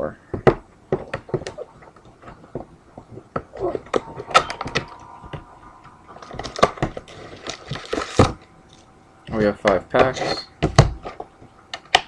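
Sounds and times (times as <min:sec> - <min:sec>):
foil packs rustling: 0:06.4 - 0:08.4.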